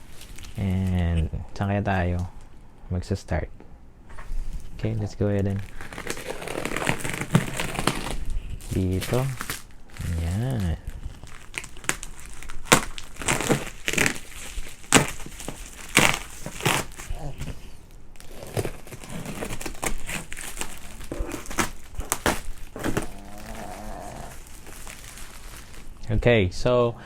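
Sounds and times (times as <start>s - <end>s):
packing tape crackling: 0.0s - 2.6s, 4.5s - 26.1s
cardboard box tearing: 5.5s - 26.0s.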